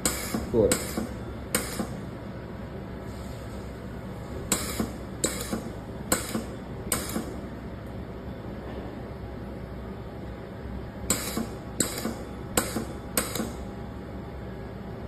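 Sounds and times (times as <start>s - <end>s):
welding machine humming: 0.0s - 2.4s, 3.0s - 7.7s, 10.9s - 14.1s
sharp machine clicks: 4.5s - 7.3s, 11.1s - 13.6s.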